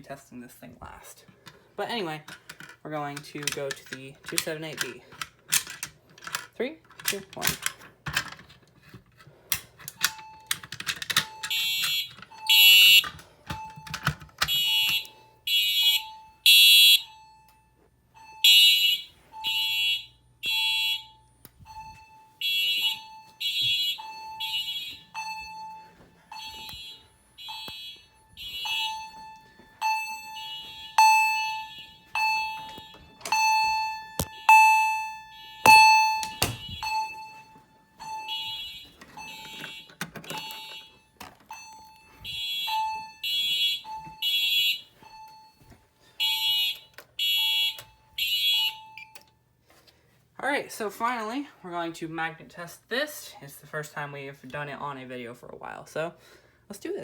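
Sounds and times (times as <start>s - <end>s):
fire alarm horns pulsing: 9.9s - 49.3s.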